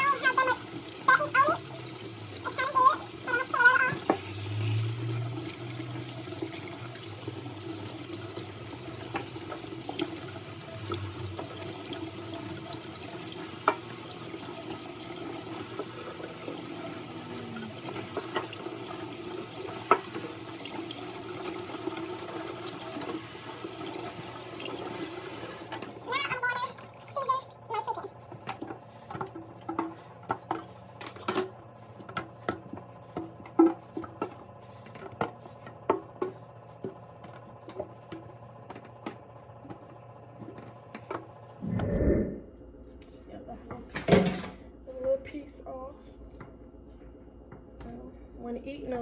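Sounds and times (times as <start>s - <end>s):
tap running into a sink: 5.3s - 25.9s.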